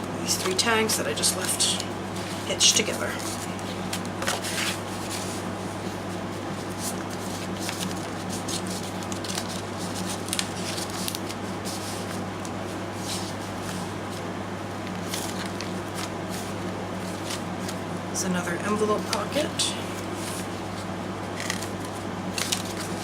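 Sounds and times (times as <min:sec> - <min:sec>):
steady low hum: 0:00.0 - 0:23.0
paper rustling and crinkling: 0:00.4 - 0:17.8, 0:19.9 - 0:23.0.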